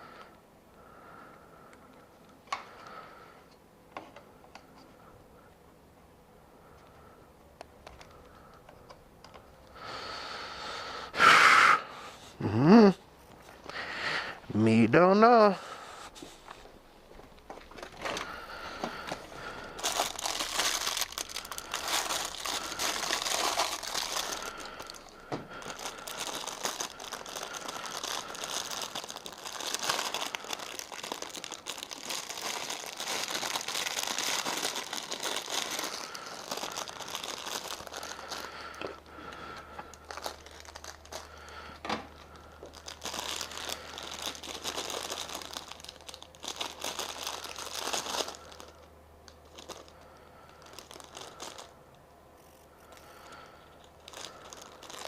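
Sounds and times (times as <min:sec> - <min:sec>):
material crinkling and rustling: 0:16.1 - 0:51.8, 0:53.7 - 0:55.0.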